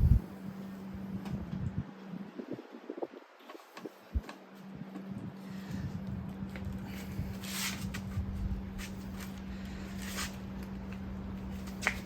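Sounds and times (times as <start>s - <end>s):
steady low hum: 0.0s - 3.2s, 3.9s - 12.0s.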